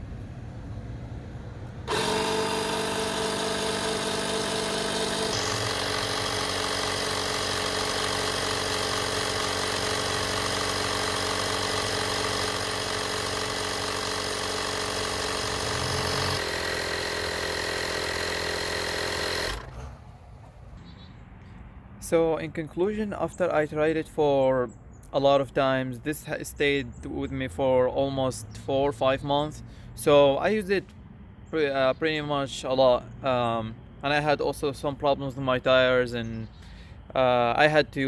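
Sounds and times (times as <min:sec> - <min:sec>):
air compressor running: 0:01.8 - 0:20.7.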